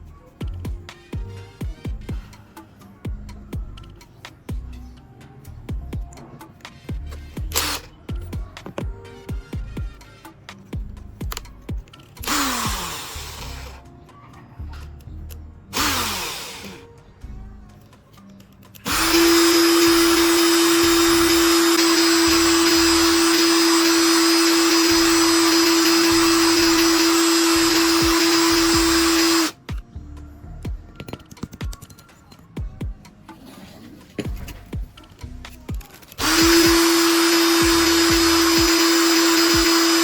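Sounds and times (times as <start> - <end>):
small electric motor tool: 7.5 - 7.9, 12.2 - 13.8, 15.7 - 16.9, 18.8 - 29.6, 36.0 - 40.0.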